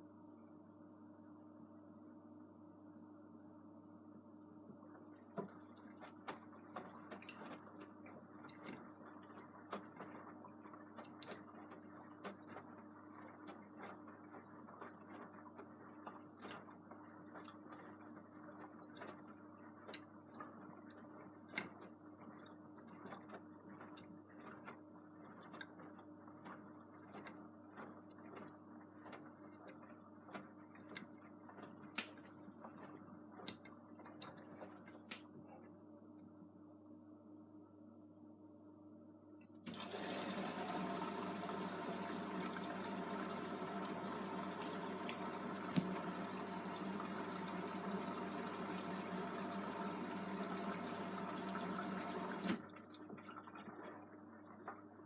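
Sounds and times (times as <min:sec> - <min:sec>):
washing machine motor humming: 0:39.6 - 0:55.0.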